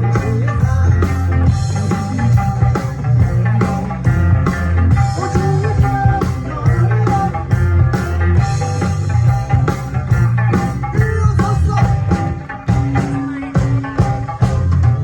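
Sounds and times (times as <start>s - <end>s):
live band playing: 0.0s - 15.0s.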